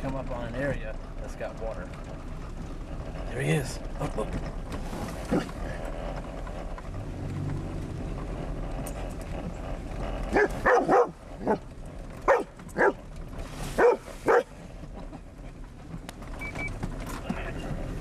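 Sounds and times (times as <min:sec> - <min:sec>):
dog barking: 0:10.3 - 0:11.6, 0:12.3 - 0:13.0, 0:13.8 - 0:14.5.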